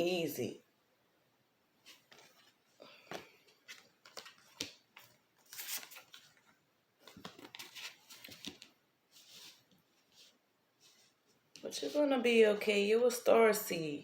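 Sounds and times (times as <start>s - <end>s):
cards rustling and clicking: 1.9s - 10.3s.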